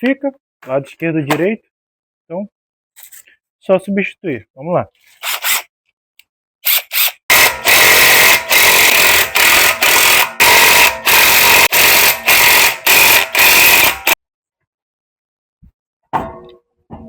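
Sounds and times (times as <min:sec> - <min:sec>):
power tool running in bursts: 0:07.3 - 0:14.2.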